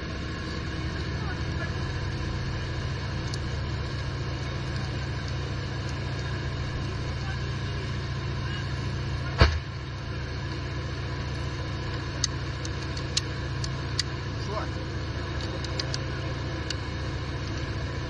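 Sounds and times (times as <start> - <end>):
low engine-like rumble: 0.0 - 18.0
loud sharp gunshot: 9.4 - 9.7.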